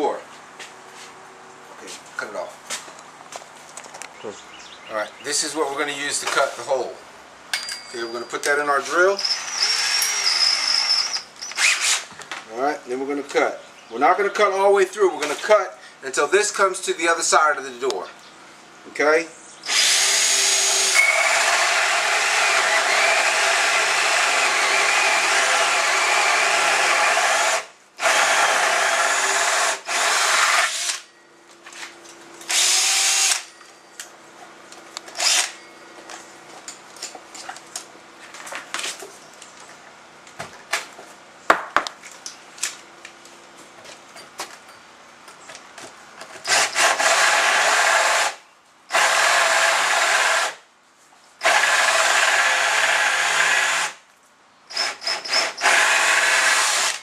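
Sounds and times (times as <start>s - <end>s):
power drill boring into wood: 9.2s - 12.1s, 19.7s - 31.1s, 32.5s - 33.5s, 35.2s - 35.6s, 46.4s - 50.6s, 51.4s - 54.0s, 54.7s - 57.0s.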